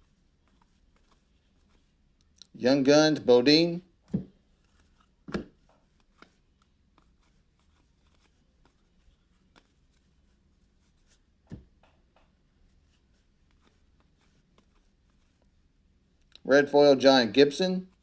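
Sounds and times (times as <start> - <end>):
cards sliding and flicking: 0.0 - 2.4, 4.1 - 15.5
soft thumps: 4.1 - 4.4.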